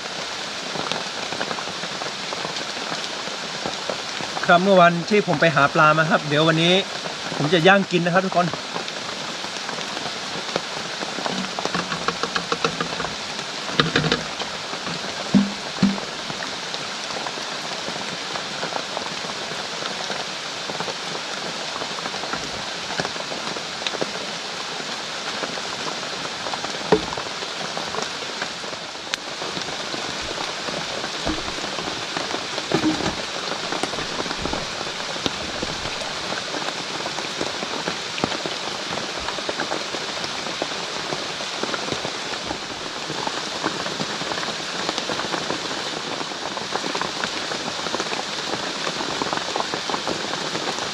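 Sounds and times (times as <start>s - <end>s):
heavy rain falling: 0.0s - 50.9s
light knocks: 11.3s - 13.2s, 13.8s - 16.1s, 30.2s - 32.0s, 32.7s - 36.1s.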